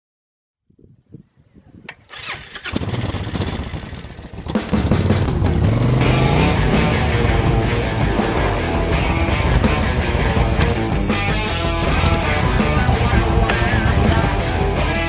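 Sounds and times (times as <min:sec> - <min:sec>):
engine starting and revving: 0:01.9 - 0:10.8, 0:11.8 - 0:14.7
loud rock music: 0:04.5 - 0:15.0.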